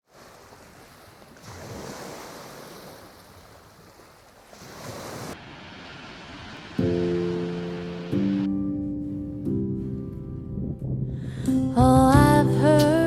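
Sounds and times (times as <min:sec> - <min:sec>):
waves washing onto beach: 0:00.0 - 0:08.5
wind: 0:00.0 - 0:13.0.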